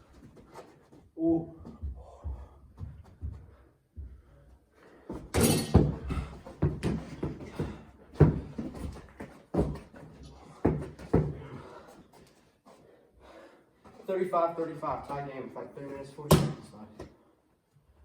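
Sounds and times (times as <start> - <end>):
basketball thuds and bangs: 5.2 - 9.0, 16.3 - 16.7.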